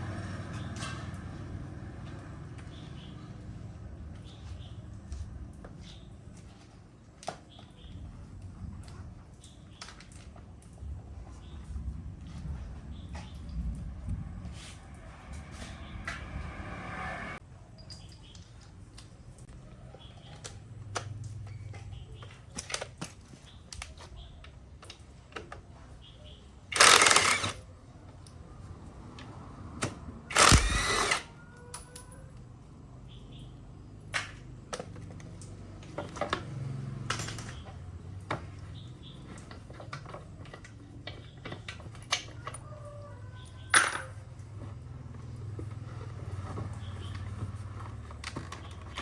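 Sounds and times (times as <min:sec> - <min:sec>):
loud noisy bursts: 0:30.3 - 0:31.2
hand tools clinking on metal: 0:43.2 - 0:44.3.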